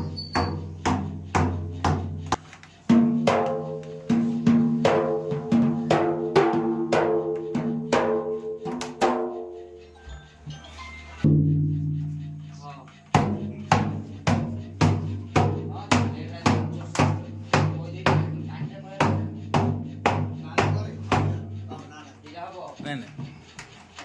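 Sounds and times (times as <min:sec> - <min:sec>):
barrel drum strokes: 0:11.2 - 0:21.9.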